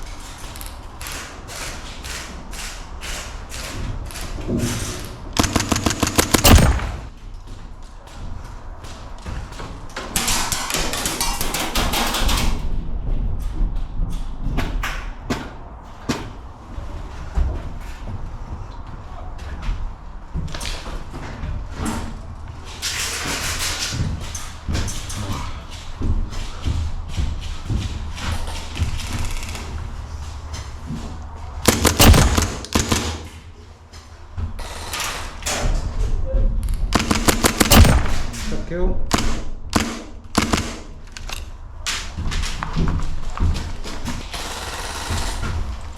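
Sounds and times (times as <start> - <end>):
airsoft guns firing: 5.4 - 7.2, 31.6 - 33.4, 37.0 - 41.2.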